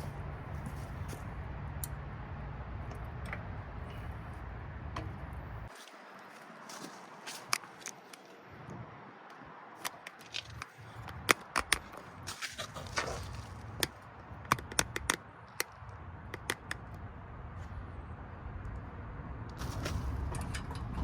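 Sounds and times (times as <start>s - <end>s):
hand tools clicking on metal: 14.5s - 15.7s, 16.4s - 16.8s.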